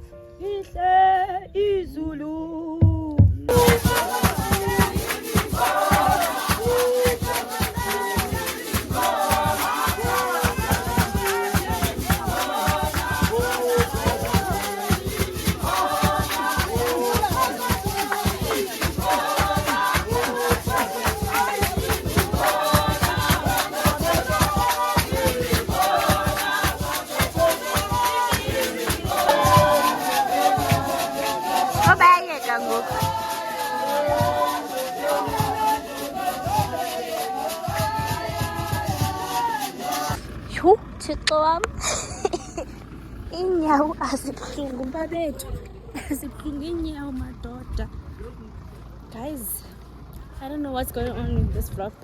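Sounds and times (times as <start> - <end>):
fast rattling beat: 3.5 - 40.2
voices singing together: 3.5 - 40.4.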